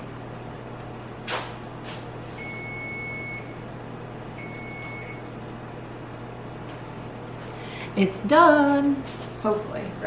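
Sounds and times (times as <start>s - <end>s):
oven beeper beeps: 2.3s - 3.6s, 4.3s - 5.4s.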